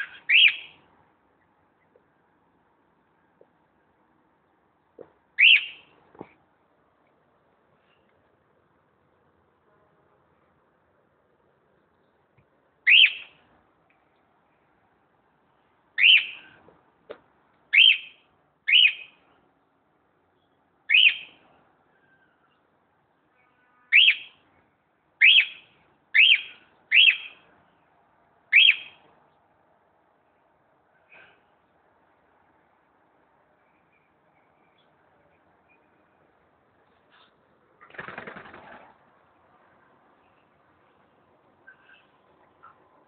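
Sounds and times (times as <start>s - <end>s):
cockatiel whistled calls: 5.4s - 5.8s, 25.2s - 25.6s, 26.2s - 27.3s, 28.5s - 29.0s.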